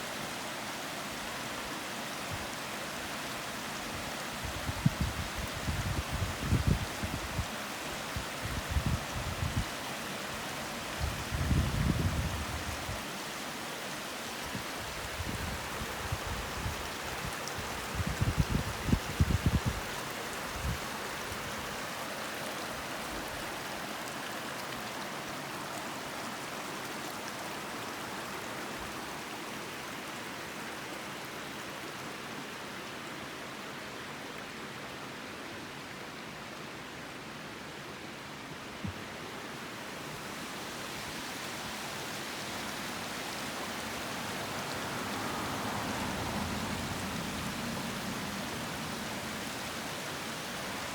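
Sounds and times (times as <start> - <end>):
river babbling over stones: 12.3 - 50.9.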